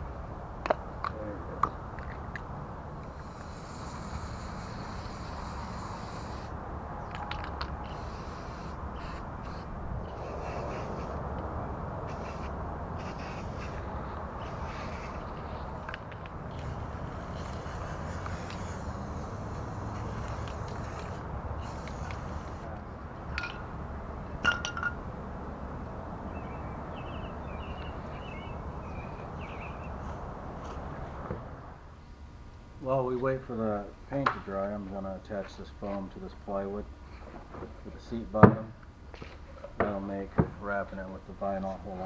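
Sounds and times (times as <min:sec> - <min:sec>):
spray hissing: 0:03.0 - 0:06.6, 0:07.8 - 0:11.3, 0:12.0 - 0:22.7
sprayer clicks: 0:14.4 - 0:22.7.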